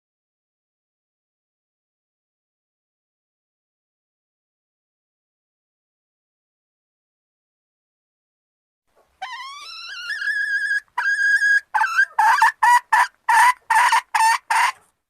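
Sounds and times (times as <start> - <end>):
junglefowl calling: 9.2 - 14.8.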